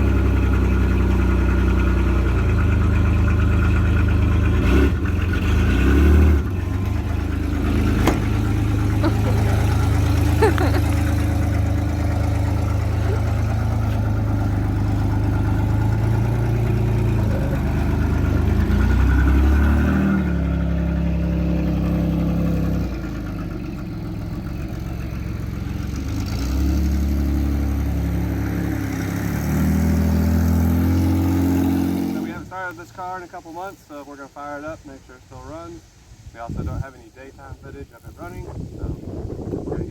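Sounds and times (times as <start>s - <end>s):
car engine revving: 0.0s - 32.5s.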